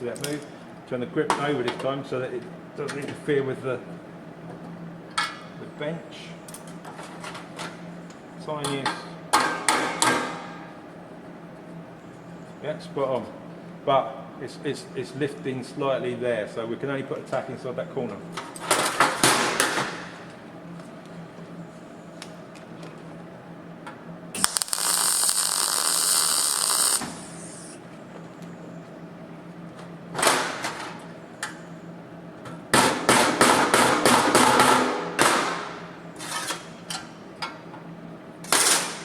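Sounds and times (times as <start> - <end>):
steady low hum: 20.0 - 30.2
crackling pulsed tack welds: 24.4 - 27.8
welding arc hiss: 24.4 - 27.8.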